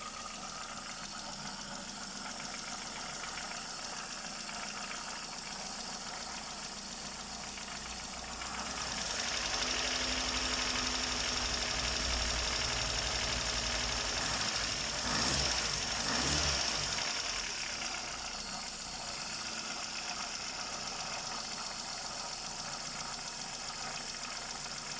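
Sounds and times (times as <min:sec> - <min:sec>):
car engine running with knock: 0:07.8 - 0:24.9.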